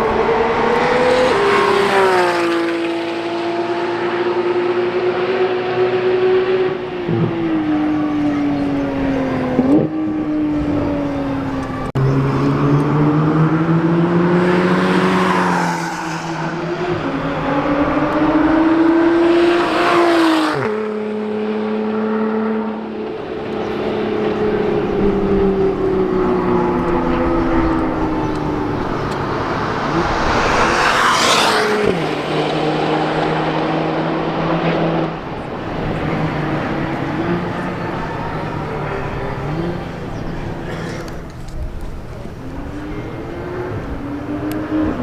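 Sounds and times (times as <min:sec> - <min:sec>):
car passing with exhaust rush: 0:00.0 - 0:45.0
sports car engine accelerating: 0:00.0 - 0:45.0.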